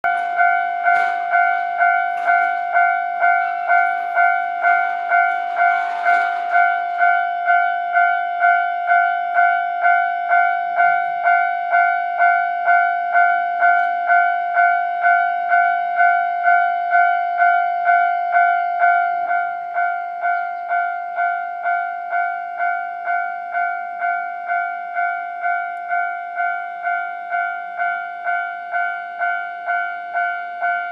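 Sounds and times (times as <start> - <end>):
clattering noise: 0.0 - 7.4
level-crossing warning bell ringing: 0.0 - 30.9.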